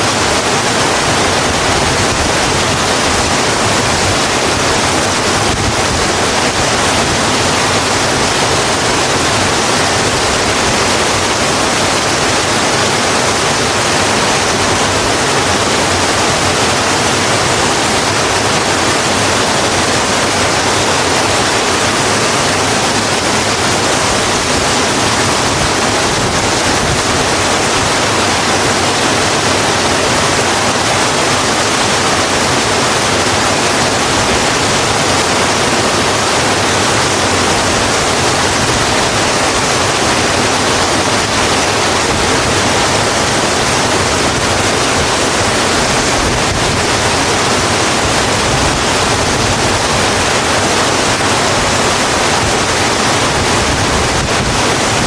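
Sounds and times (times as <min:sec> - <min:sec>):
rain falling on a road: 0:00.0 - 0:55.0.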